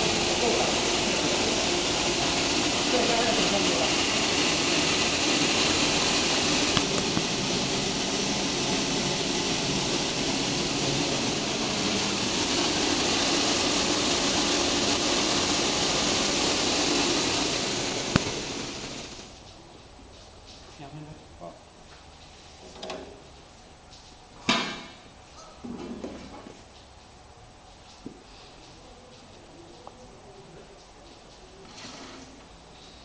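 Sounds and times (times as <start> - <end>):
sorting machine hissing: 0.0 - 19.5, 31.0 - 33.0.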